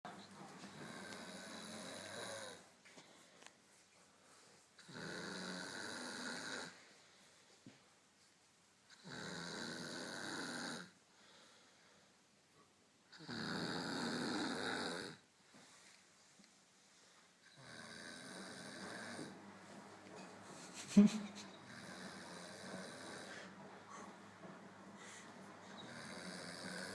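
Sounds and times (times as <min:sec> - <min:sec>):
woman snoring: 0:00.7 - 0:02.6, 0:04.8 - 0:06.8, 0:08.9 - 0:11.0, 0:13.2 - 0:15.2, 0:17.5 - 0:19.3, 0:21.7 - 0:23.5, 0:25.8 - 0:26.9.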